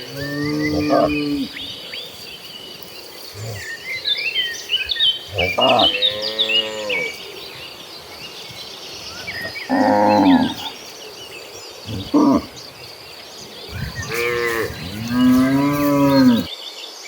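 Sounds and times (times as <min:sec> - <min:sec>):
cows mooing: 0:00.0 - 0:01.6, 0:05.2 - 0:07.2, 0:09.1 - 0:10.8, 0:11.9 - 0:12.6, 0:13.7 - 0:16.5
insects buzzing: 0:00.0 - 0:16.7
small birds chirping: 0:00.0 - 0:17.0.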